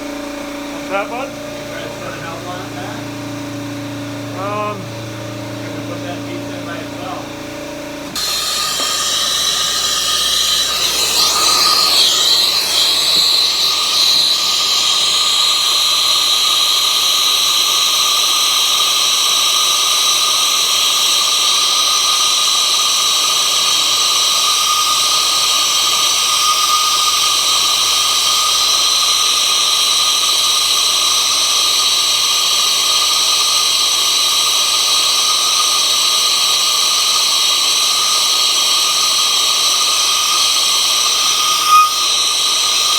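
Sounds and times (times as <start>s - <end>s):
torch flame hissing with whistle: 0.0s - 42.9s.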